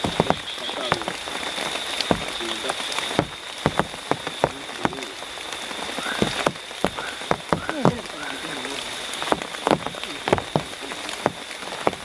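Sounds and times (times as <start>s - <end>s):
heavy rain falling: 0.0s - 12.0s
raindrops tapping loudly: 0.0s - 12.0s.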